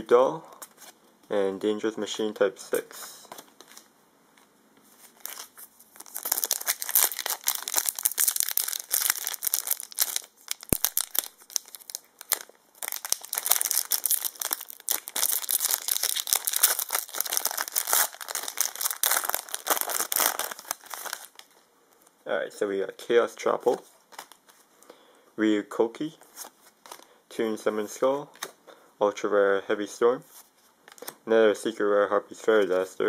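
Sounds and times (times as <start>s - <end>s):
foil wrapper crinkling and tearing: 5.2s - 21.5s.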